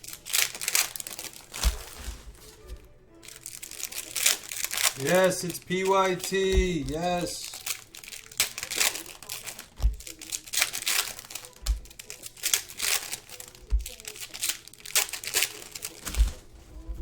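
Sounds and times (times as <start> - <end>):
wrappers crinkling and tearing: 0.0 - 16.9
dull thumps: 6.5 - 7.3, 9.8 - 10.1.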